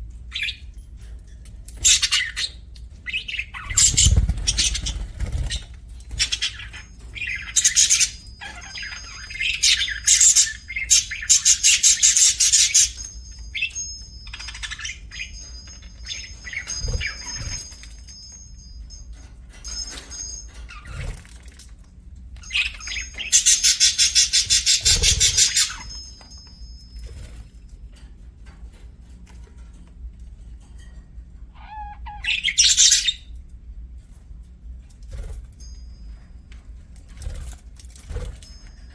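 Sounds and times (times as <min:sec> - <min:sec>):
budgerigars chirping and chattering: 0:01.8 - 0:17.8, 0:22.4 - 0:26.1, 0:31.6 - 0:33.2.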